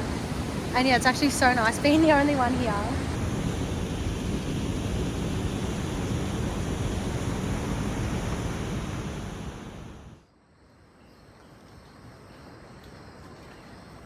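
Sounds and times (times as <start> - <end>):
steady rain falling: 0.0 - 3.7, 10.6 - 14.0.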